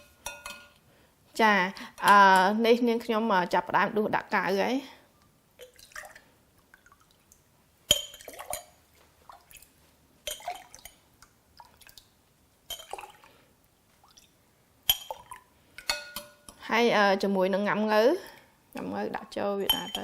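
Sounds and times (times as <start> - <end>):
ladle clinking on glass: 0.0 - 0.7, 7.9 - 8.7, 10.3 - 10.7, 14.9 - 16.6, 19.7 - 20.0.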